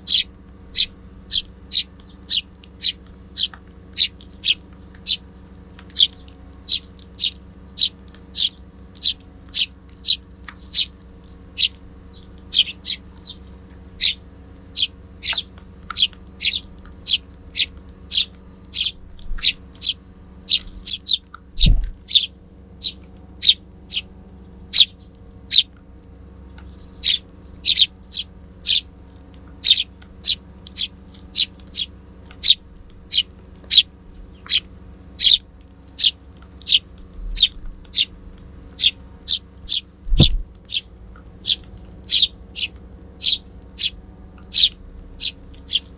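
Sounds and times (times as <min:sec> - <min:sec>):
sparrow chirping: 0:00.0 - 0:25.7, 0:26.6 - 0:29.0, 0:29.6 - 0:38.1, 0:38.7 - 0:45.9
low thump: 0:40.1 - 0:40.4.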